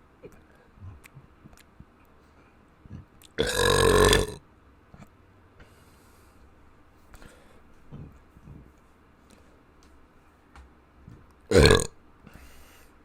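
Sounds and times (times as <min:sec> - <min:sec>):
person burping: 0:03.0 - 0:04.4, 0:11.5 - 0:12.0.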